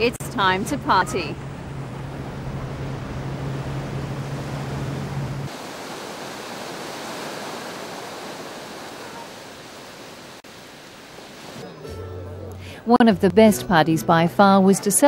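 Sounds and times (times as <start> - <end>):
low hum with rumble: 0.0 - 5.5.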